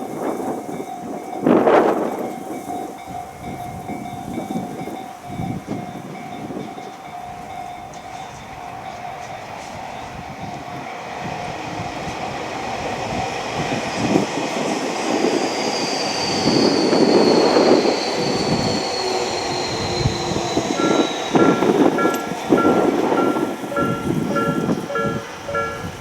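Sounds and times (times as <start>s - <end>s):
electric train passing: 0.0s - 26.0s
high thin whine: 16.1s - 26.0s.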